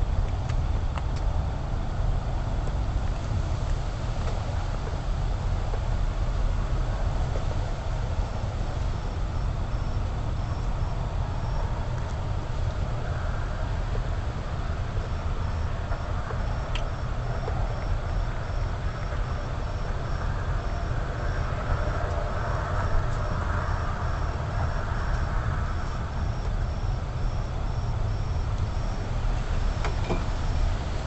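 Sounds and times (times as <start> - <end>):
low rumble and hiss: 0.0 - 31.0.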